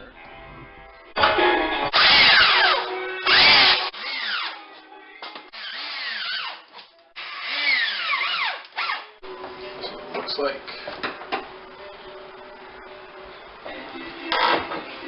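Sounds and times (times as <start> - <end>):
power drill driving screws: 2.0 - 4.6, 7.2 - 9.0.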